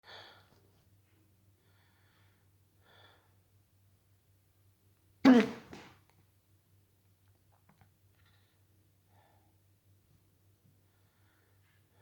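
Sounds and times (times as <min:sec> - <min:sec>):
faint breathing: 0:01.6 - 0:03.4, 0:10.8 - 0:12.0
person hiccuping: 0:05.3 - 0:05.9.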